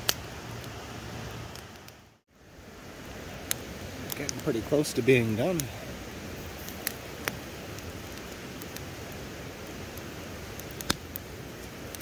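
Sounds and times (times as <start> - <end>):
fire crackling pops: 0.0 - 12.0.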